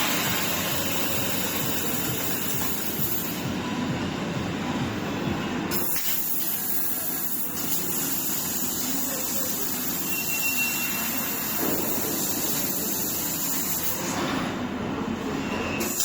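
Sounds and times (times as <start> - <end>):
laser cutter hissing rush: 0.0 - 3.4, 5.7 - 14.2, 15.8 - 16.0.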